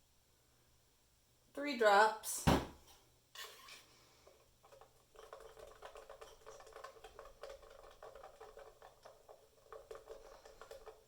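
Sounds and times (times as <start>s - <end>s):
paint stirred in a cup: 3.4s - 11.0s.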